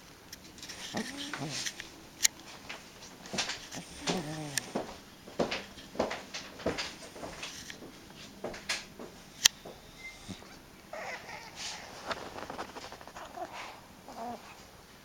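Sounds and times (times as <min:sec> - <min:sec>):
cat noises: 0:00.5 - 0:05.1, 0:09.3 - 0:14.8.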